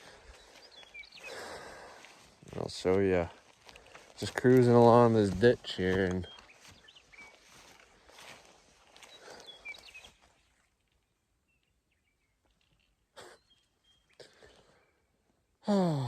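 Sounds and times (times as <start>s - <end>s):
faint bird chirps: 0.0s - 2.0s, 6.2s - 15.2s
man groaning: 15.7s - 16.0s.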